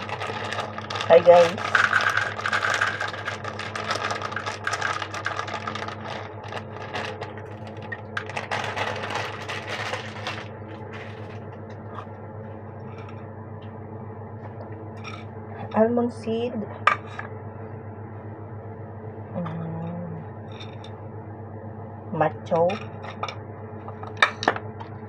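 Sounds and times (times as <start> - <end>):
clicking and rattling of handled objects: 0.0 - 7.4
steady low hum: 0.0 - 25.0.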